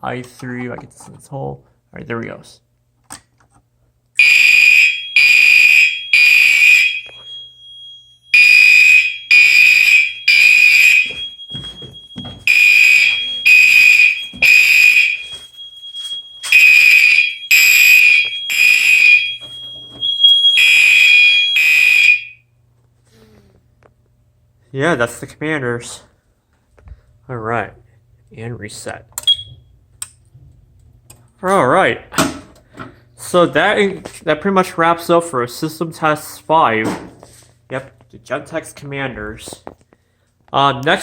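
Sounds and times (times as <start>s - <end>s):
fire alarm horn blasts: 4.2s - 22.6s
steady high tone: 4.6s - 22.4s.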